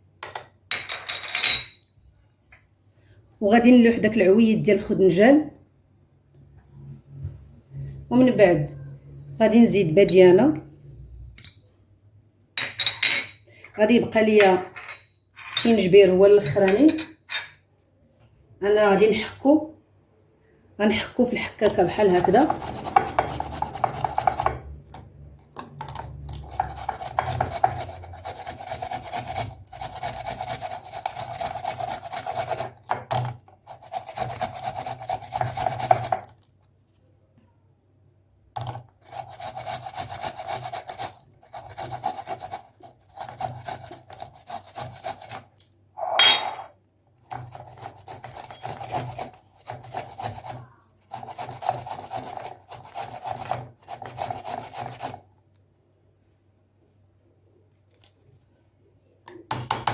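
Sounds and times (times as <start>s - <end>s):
ginger scraping on grater: 21.9s - 24.6s, 26.3s - 32.8s, 33.7s - 36.3s, 39.0s - 45.5s, 47.3s - 55.2s.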